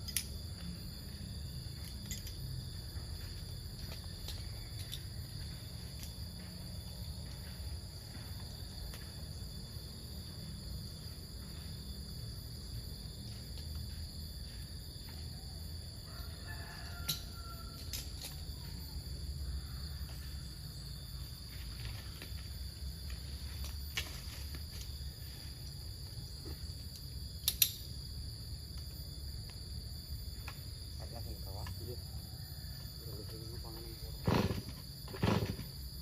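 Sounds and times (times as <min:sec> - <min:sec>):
insects chirring: 0:00.0 - 0:36.0
sharp clicks: 0:27.0 - 0:27.8.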